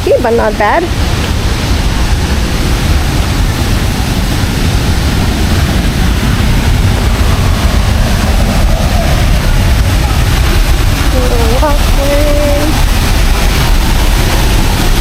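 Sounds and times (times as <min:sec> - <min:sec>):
waterfall roaring: 0:00.0 - 0:15.0.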